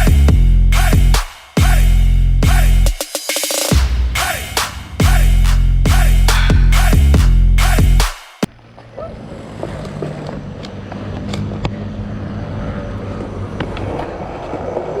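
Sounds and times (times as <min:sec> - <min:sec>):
skateboard wheels rolling on concrete: 0:08.5 - 0:15.0
skateboard wheel clicks: 0:09.5 - 0:11.8.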